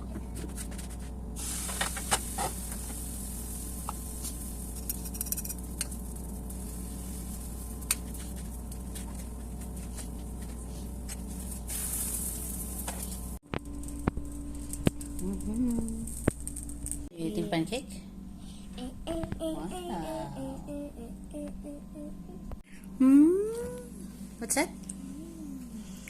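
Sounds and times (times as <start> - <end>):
pancakes sizzling in frying pan: 1.4 - 9.0, 11.4 - 13.2.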